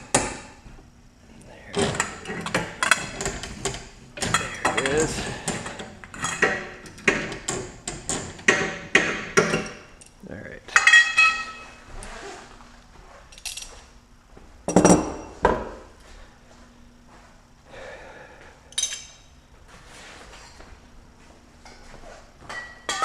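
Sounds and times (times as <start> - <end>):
metal tools knocking and clinking: 1.8 - 10.1, 10.7 - 11.7, 18.7 - 19.3
ringing metal clang: 10.8 - 11.8.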